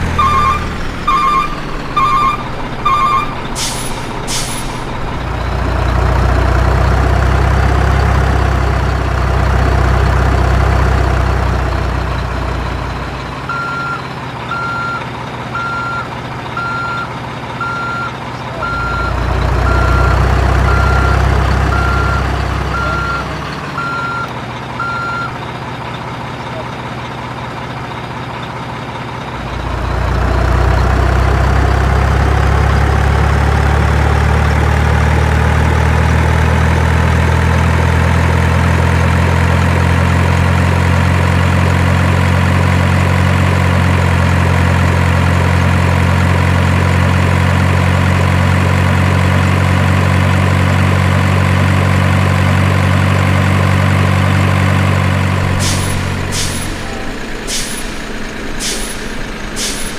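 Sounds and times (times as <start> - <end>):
heavy truck engine running: 0.0 - 59.9
air brake hisses: 3.6 - 5.0, 55.6 - 59.9.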